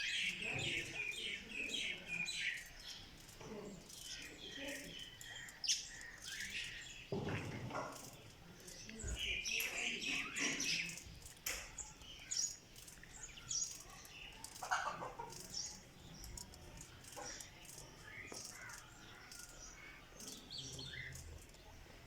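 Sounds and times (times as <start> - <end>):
quails calling: 14.6 - 15.3.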